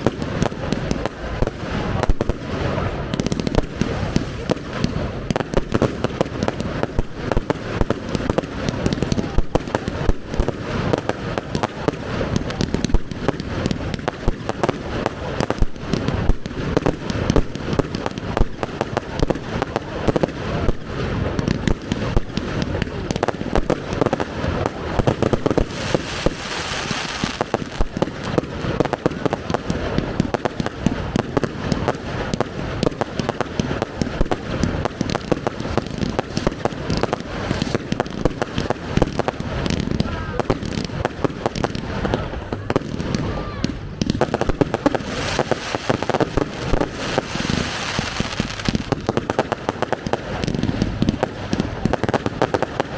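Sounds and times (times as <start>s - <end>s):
hissing crackle: 21.6s - 29.0s, 44.1s - 52.9s.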